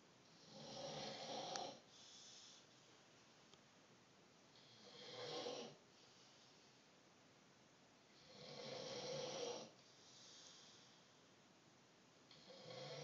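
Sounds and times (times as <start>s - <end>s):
person snoring: 0.4s - 1.8s, 4.6s - 5.8s, 8.2s - 9.7s, 12.3s - 13.0s
soft breath out: 9.8s - 11.3s.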